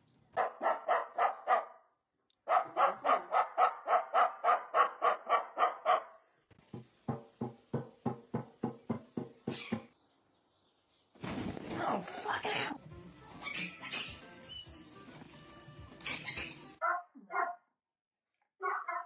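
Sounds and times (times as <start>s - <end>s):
dog barking rapidly: 0.4s - 1.8s, 2.5s - 6.2s, 16.4s - 17.6s, 18.6s - 19.0s.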